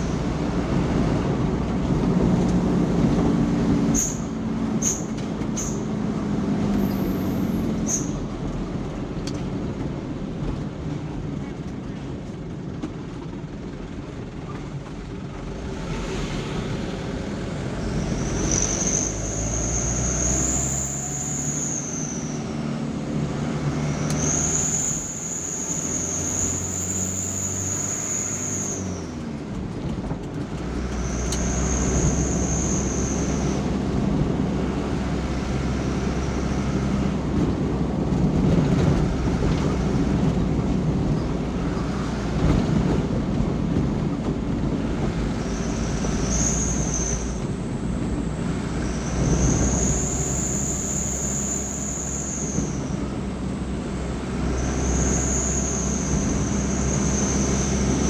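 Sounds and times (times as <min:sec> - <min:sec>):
vehicle engine hum: 0:00.0 - 0:58.0.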